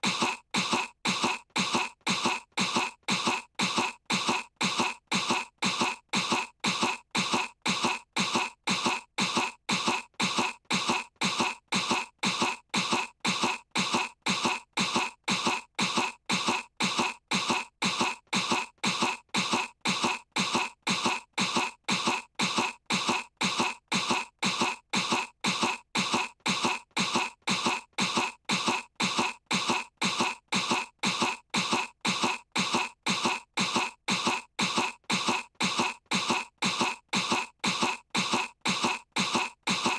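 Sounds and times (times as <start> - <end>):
cartoon girl fake coughing: 0.0 - 39.9.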